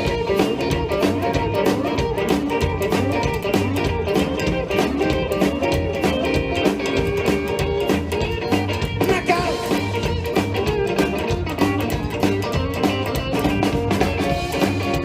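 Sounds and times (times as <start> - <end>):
bass guitar: 0.0 - 15.0
electric guitar: 0.0 - 15.0
steady drum beat: 0.0 - 15.0.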